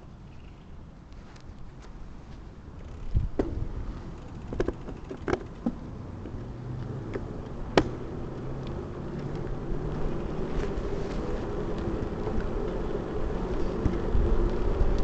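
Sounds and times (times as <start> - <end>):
bike knocks and rattles: 2.8 - 5.8, 7.1 - 8.2.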